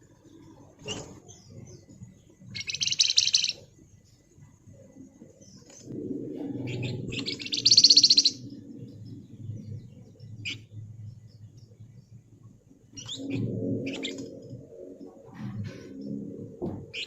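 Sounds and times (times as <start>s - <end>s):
songbird rattling high trill: 7.2s - 8.4s.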